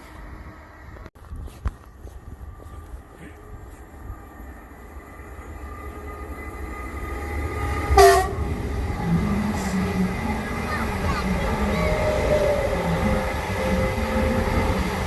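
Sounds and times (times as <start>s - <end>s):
electric train rumble: 2.0s - 15.0s
train horn blast: 7.1s - 15.0s.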